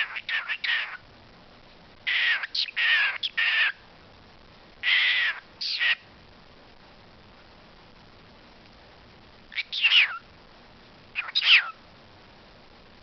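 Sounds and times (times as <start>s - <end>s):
pet bird calling: 0.0s - 1.0s, 2.1s - 3.8s, 4.8s - 6.0s, 9.5s - 10.2s, 11.2s - 11.8s.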